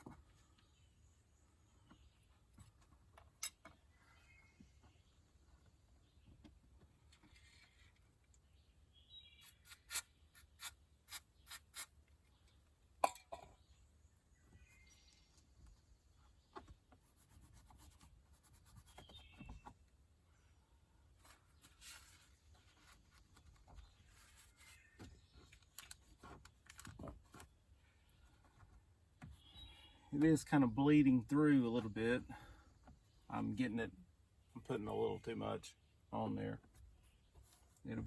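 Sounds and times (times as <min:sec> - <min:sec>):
faint rubbing and scraping: 0:07.0 - 0:08.2, 0:21.1 - 0:30.8.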